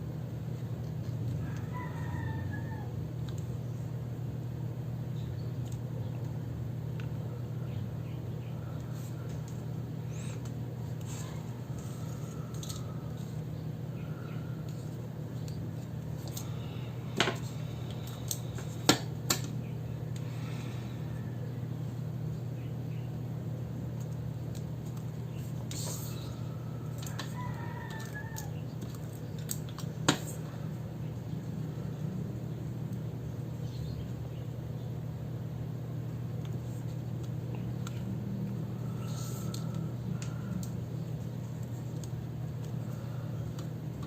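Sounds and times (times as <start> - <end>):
steady low hum: 0.0 - 44.0
distant bird calling: 11.2 - 14.9.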